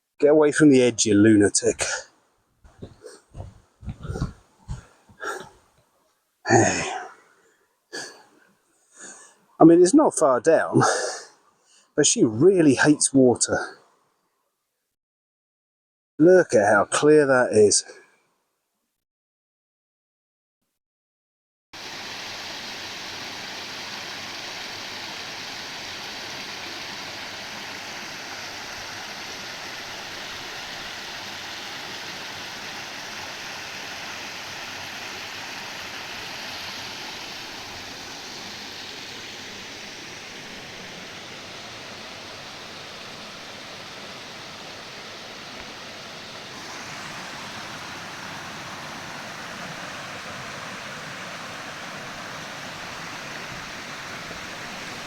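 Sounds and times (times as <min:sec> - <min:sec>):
stream rushing over rocks: 0:02.7 - 0:05.5, 0:21.8 - 0:55.0.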